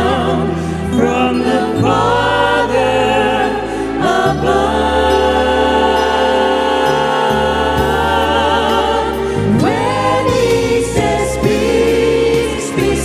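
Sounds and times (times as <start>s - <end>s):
choir singing gospel song: 0.0s - 13.0s
instrumental accompaniment: 0.0s - 13.0s.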